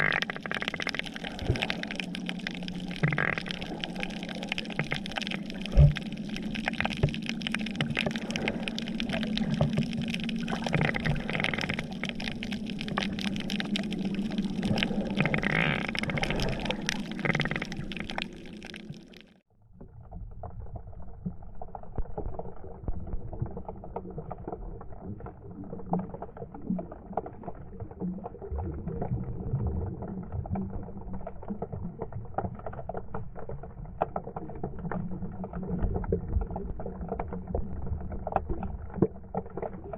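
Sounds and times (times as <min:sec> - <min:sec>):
faint crackling: 0:00.0 - 0:19.4
muffled underwater sound: 0:00.0 - 0:39.9
water sloshing and splashing: 0:00.0 - 0:39.9.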